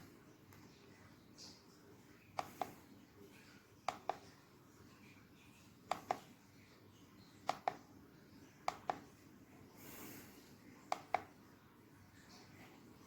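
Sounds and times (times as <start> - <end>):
faint background hiss: 0.0 - 13.0.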